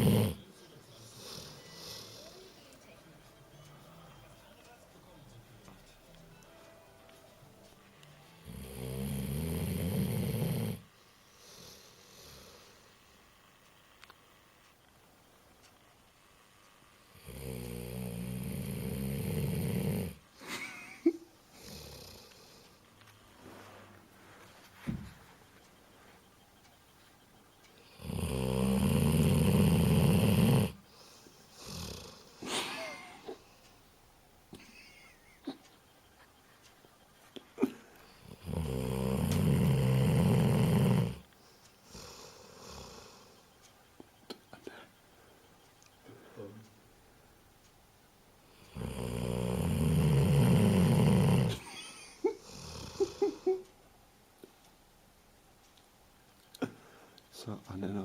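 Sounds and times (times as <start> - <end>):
dog snoring: 0.0 - 0.5, 1.1 - 2.5, 8.4 - 12.8, 17.1 - 20.2, 21.6 - 22.8, 27.8 - 32.9, 38.0 - 43.4, 48.5 - 53.4.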